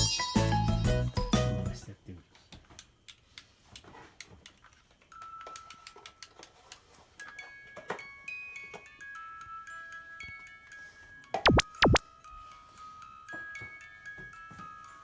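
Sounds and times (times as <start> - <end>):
light ticking percussion: 11.5 - 12.0.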